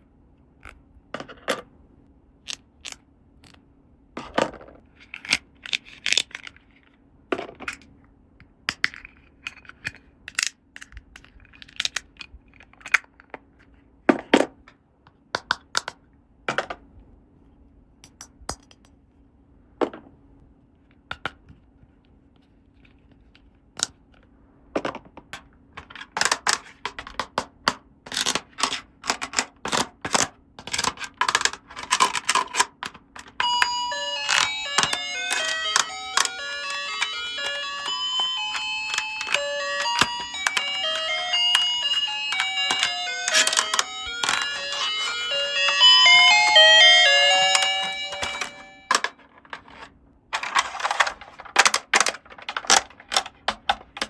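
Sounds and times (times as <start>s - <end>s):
plastic toy pieces clicking: 8.7s - 13.1s, 25.3s - 45.2s, 50.4s - 54.0s.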